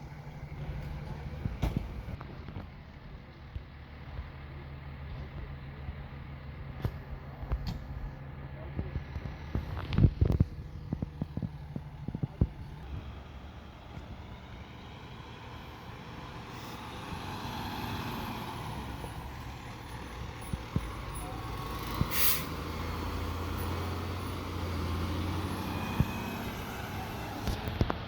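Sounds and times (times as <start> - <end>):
diesel engine running: 0.0 - 28.0
air brakes hissing: 16.0 - 18.4, 21.6 - 22.8.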